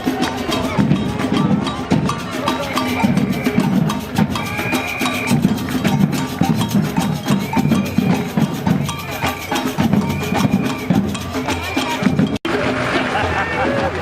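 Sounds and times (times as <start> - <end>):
music with percussive beat: 0.0 - 14.0.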